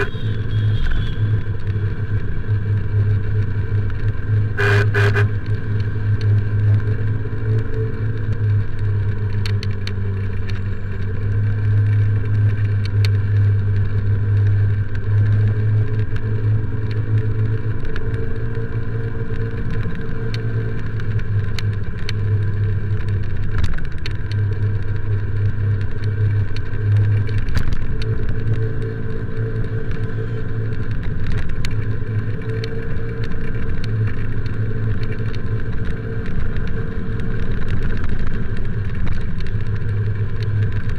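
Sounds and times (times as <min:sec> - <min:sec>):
motorcycle engine revving: 0:00.0 - 0:09.4
wind rumble on microphone: 0:00.0 - 0:40.9.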